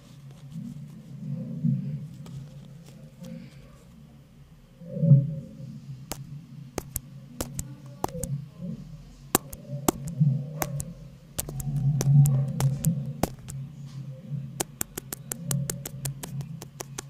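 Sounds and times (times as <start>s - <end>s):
sharp clicks: 6.8s - 8.3s, 9.4s - 13.6s, 14.6s - 17.0s.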